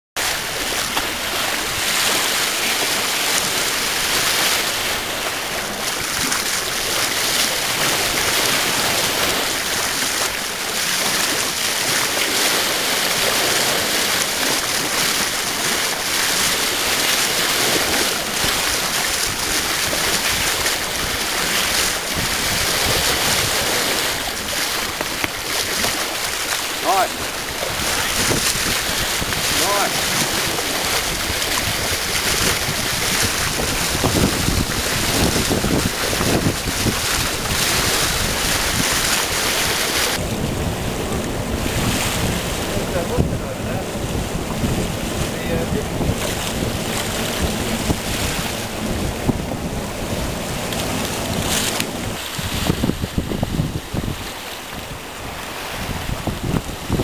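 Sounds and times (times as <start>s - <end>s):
rushing water: 0.2s - 57.0s
wind hiss: 14.8s - 57.0s.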